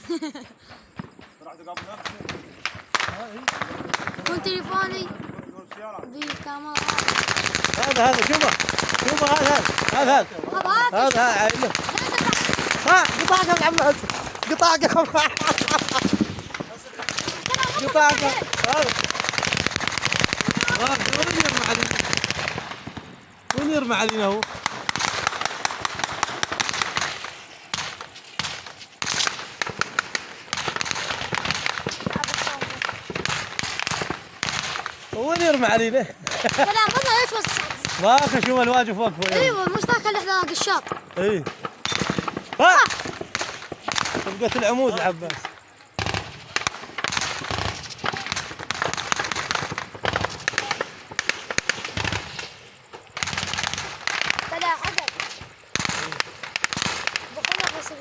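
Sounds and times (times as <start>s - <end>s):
heavy gunfire with echoes: 1.8s - 5.5s, 6.2s - 45.4s, 46.0s - 52.5s, 53.2s - 58.0s
automatic gunfire bursts: 6.2s - 23.6s.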